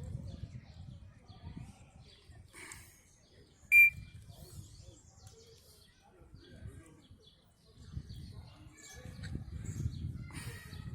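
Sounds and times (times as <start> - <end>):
parrot shrill whistle call: 3.7 - 4.0.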